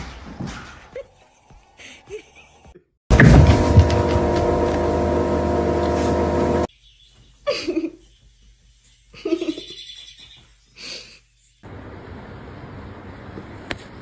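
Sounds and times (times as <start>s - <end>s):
person laughing: 7.5s - 8.1s, 9.1s - 10.2s.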